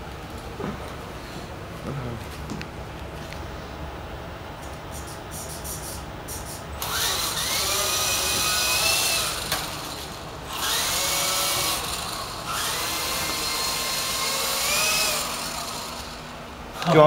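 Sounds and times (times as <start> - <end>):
toy helicopter motor whining: 5.4 - 16.3.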